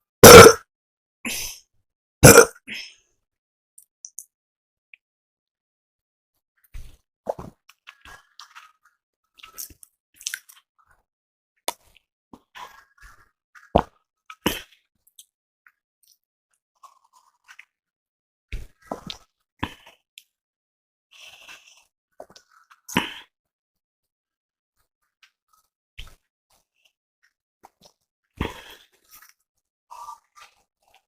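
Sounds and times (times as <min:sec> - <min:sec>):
mouth clicks and pops drinking: 0:00.2 - 0:00.6.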